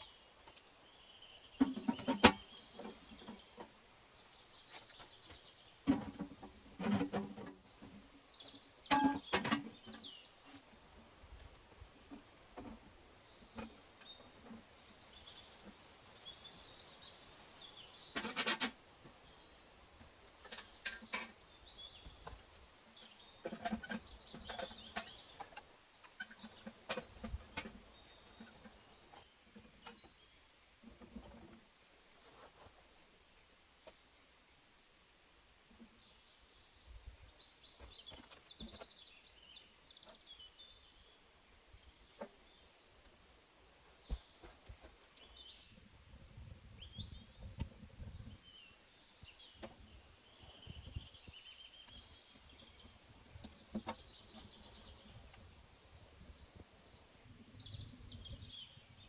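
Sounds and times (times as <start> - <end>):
small birds chirping: 0.0 - 59.0
knocks and clatter from handwork: 4.9 - 7.6.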